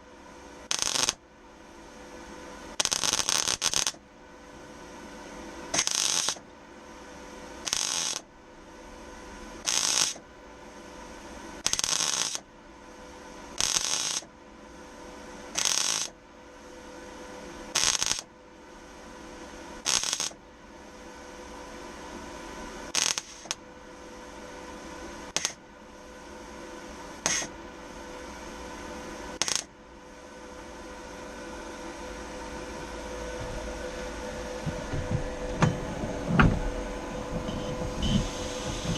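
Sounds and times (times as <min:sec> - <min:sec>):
welder humming: 0:00.0 - 0:01.2, 0:02.1 - 0:06.4, 0:07.1 - 0:10.2, 0:10.8 - 0:12.4, 0:13.4 - 0:14.3, 0:15.5 - 0:16.1, 0:17.6 - 0:18.3, 0:19.1 - 0:20.4, 0:21.0 - 0:38.9
welding arc crackling: 0:00.6 - 0:01.2, 0:02.7 - 0:04.0, 0:05.7 - 0:06.4, 0:07.6 - 0:08.2, 0:09.6 - 0:10.2, 0:11.6 - 0:12.4, 0:13.6 - 0:14.3, 0:15.6 - 0:16.2, 0:17.7 - 0:18.3, 0:19.8 - 0:20.4, 0:22.9 - 0:23.6, 0:25.3 - 0:25.6, 0:27.1 - 0:27.5, 0:29.4 - 0:29.8, 0:31.4 - 0:38.9.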